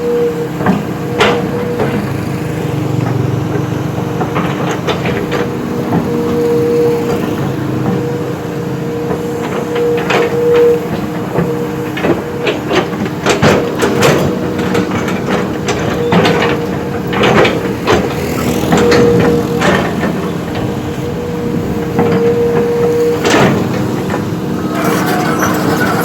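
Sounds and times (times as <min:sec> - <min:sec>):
heavy diesel machine running: 0:00.0 - 0:26.0
metallic clanks and knocks: 0:22.0 - 0:26.0.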